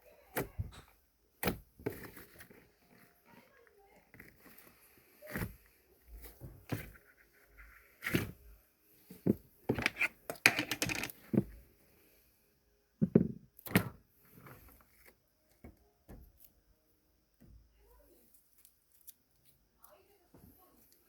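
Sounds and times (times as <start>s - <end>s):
small objects clicking and knocking: 9.7s - 11.5s.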